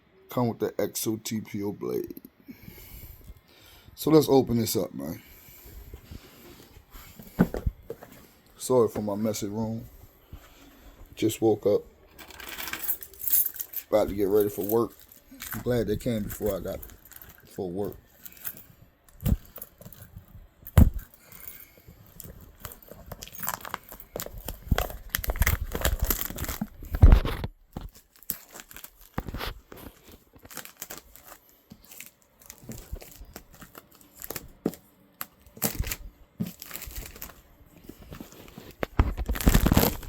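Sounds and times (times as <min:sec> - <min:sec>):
packaging tearing and crinkling: 0:22.1 - 0:37.4, 0:38.0 - 0:40.0.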